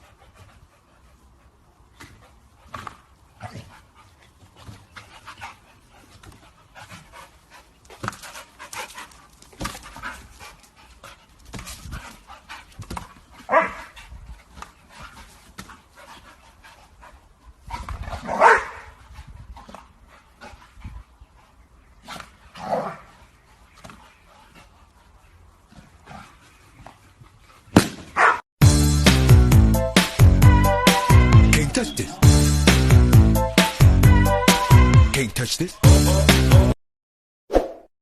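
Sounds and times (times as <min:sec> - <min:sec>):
dog barking: 0:13.5 - 0:13.8, 0:18.3 - 0:18.9, 0:28.2 - 0:28.4.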